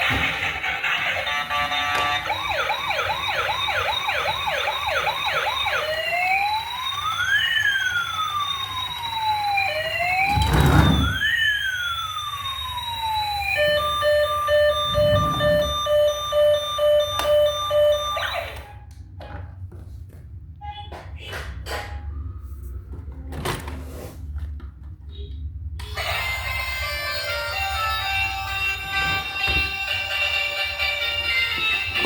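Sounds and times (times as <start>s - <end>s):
toy electronic siren: 0.1s - 18.9s, 25.8s - 32.0s.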